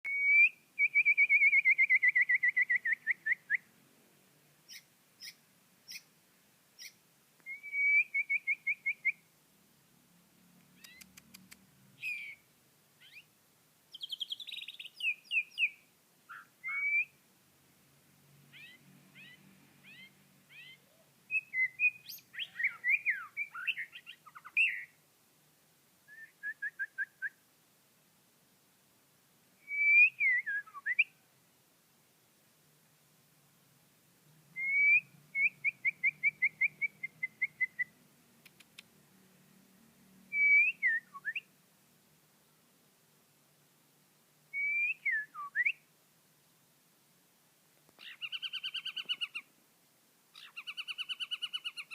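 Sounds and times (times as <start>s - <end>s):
songbird singing: 0.0s - 9.4s, 10.3s - 25.1s, 26.0s - 27.5s, 29.5s - 31.4s, 34.3s - 41.6s, 44.4s - 45.9s, 47.8s - 49.6s, 50.3s - 51.9s.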